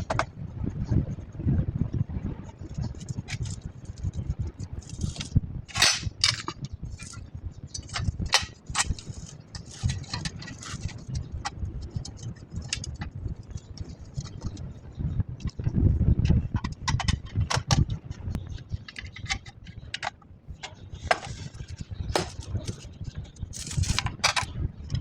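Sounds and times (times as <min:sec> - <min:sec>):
metal parts and tools clinking: 0:04.8 - 0:11.1, 0:20.7 - 0:22.8, 0:23.5 - 0:24.5.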